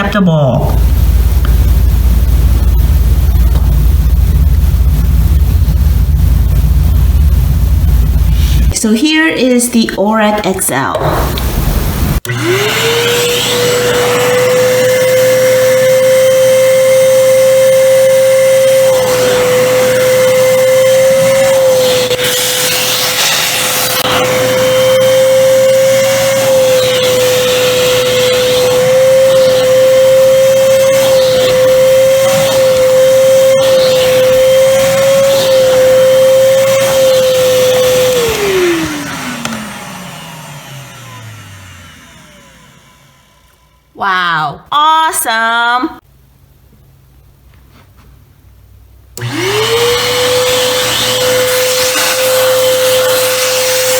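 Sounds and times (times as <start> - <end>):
handheld vacuum cleaner motor whine: 12.2 - 43.8, 49.2 - 53.9.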